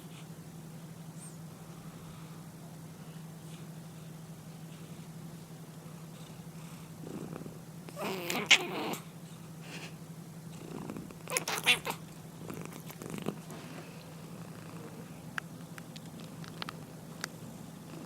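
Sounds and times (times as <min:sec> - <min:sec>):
cat snoring: 0:06.2 - 0:09.0, 0:10.5 - 0:11.2, 0:14.3 - 0:15.2.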